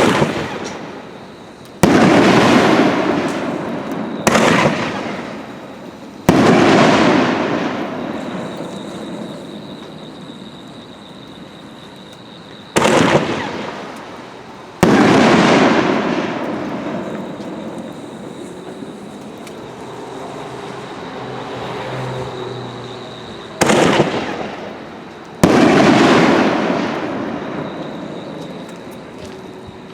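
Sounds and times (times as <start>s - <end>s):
firework burst bang rumbling: 0.0s - 1.1s, 1.8s - 5.6s, 6.2s - 9.4s, 12.8s - 13.9s, 14.8s - 18.8s, 23.6s - 24.8s, 25.4s - 27.9s.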